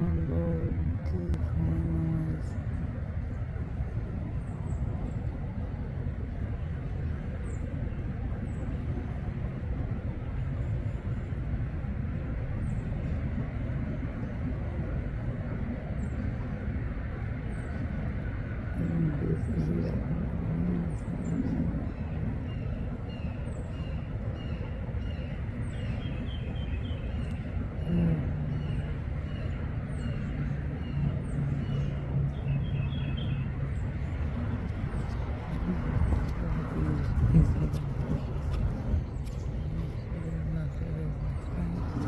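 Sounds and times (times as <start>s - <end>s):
person's voice: 0.0s - 2.6s, 18.8s - 22.0s, 27.8s - 28.4s, 35.5s - 38.5s, 39.8s - 42.0s
low rumble: 0.0s - 4.5s
steady low rumble: 0.0s - 42.0s.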